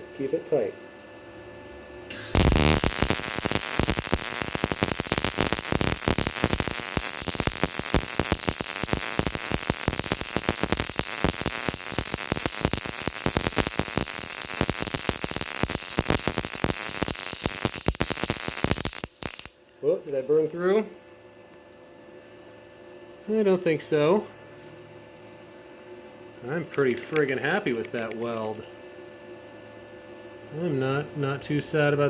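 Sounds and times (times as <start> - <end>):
welding arc crackling: 2.1 - 20.4.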